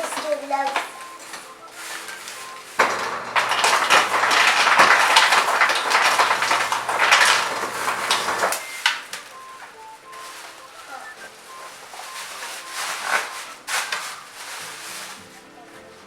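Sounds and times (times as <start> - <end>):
ice cubes clattering into cup: 0.0 - 11.2
ice dispenser motor humming: 0.0 - 11.6.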